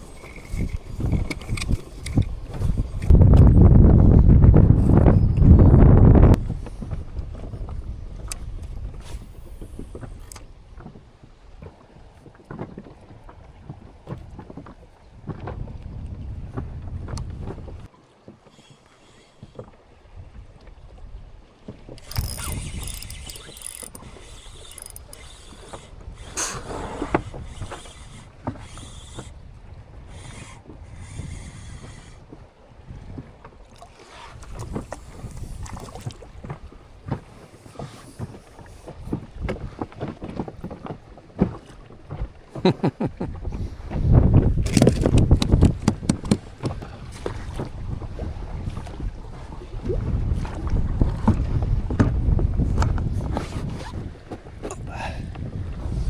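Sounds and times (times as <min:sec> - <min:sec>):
gusty wind buffeting microphone: 0:00.0 - 0:10.9, 0:15.2 - 0:17.9, 0:43.3 - 0:56.0.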